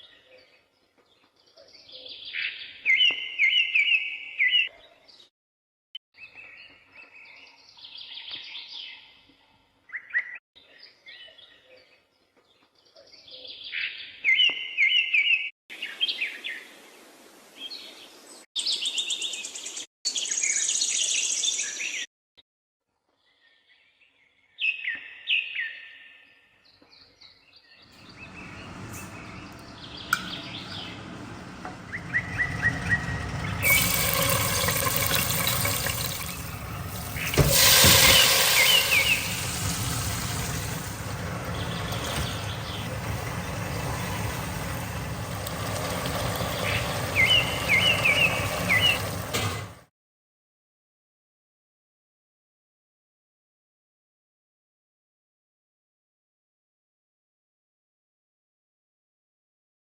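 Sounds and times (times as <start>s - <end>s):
birds chirping and calling: 28.0s - 37.4s, 38.1s - 49.2s
steady hiss: 33.7s - 49.5s.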